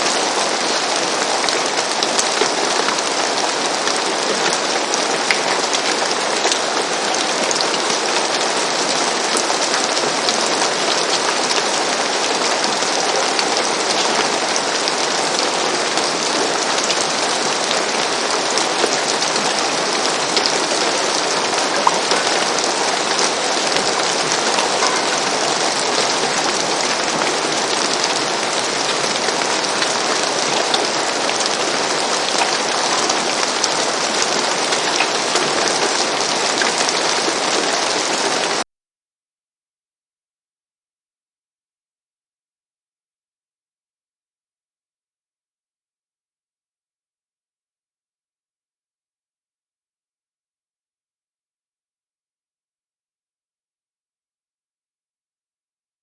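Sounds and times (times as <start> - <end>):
rain falling on a roof: 0.0 - 38.6.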